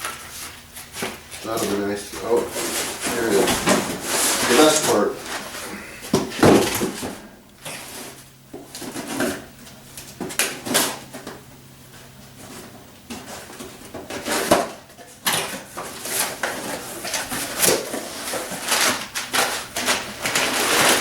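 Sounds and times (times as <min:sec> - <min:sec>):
packaging rustling: 0:00.0 - 0:07.2, 0:15.3 - 0:21.0.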